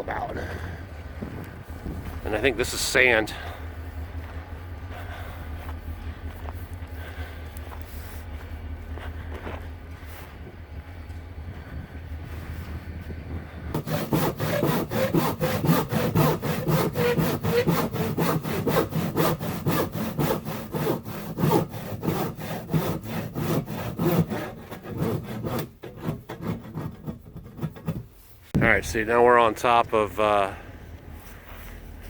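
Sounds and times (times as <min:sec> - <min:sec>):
footsteps crunching on gritty ground: 0:01.2 - 0:02.3, 0:03.6 - 0:13.2.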